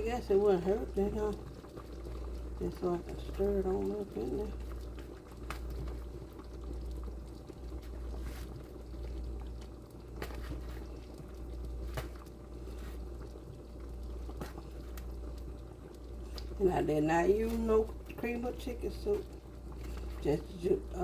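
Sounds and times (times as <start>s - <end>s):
pot bubbling at a boil: 0.0s - 21.0s
steady low hum: 0.0s - 21.0s.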